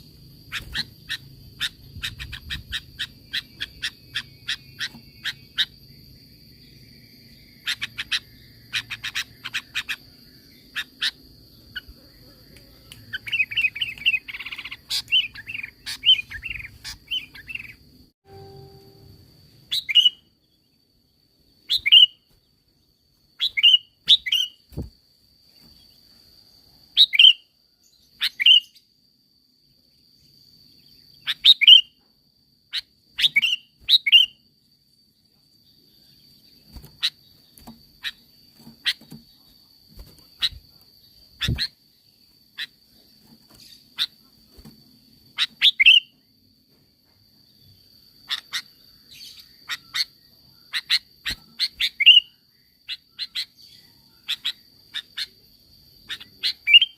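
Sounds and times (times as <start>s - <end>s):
bird chirping: 0.0s - 24.9s, 26.9s - 28.9s, 30.0s - 32.0s, 32.7s - 44.6s, 45.2s - 46.3s, 47.4s - 56.9s
faint clicking bird notes: 11.8s - 17.7s
faint high-pitched tone: 18.2s - 19.6s.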